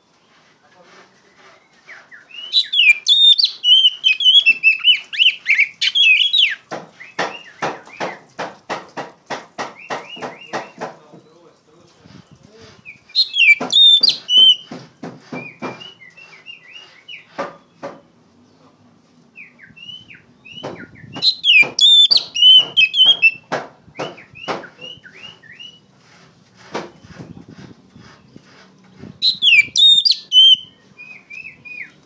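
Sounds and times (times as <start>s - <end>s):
bird singing whistled notes: 1.6s - 8.2s, 12.8s - 14.7s, 15.4s - 17.8s, 19.4s - 25.9s, 29.2s - 32.0s.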